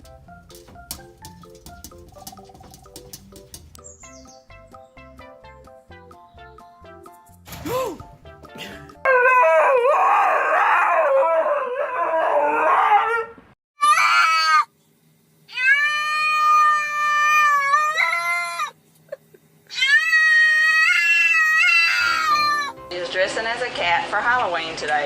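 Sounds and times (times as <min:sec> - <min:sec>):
cat yowling: 0:09.1 - 0:14.7, 0:15.5 - 0:18.8, 0:19.7 - 0:22.8.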